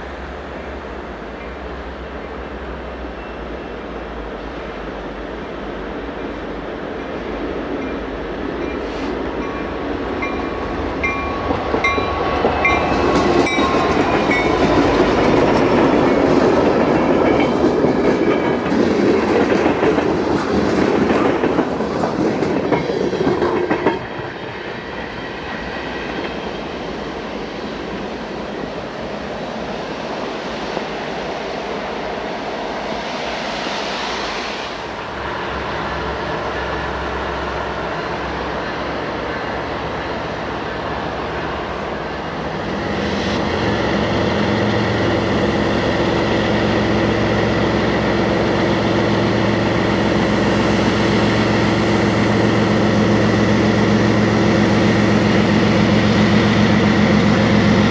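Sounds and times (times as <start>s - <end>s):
train wheels clacking over rail joints: 11.0s - 24.2s.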